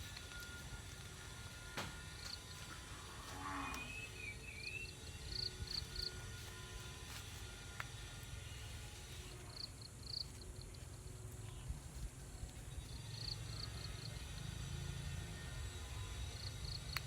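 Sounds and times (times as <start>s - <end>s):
steady low rumble: 9.7s - 14.4s.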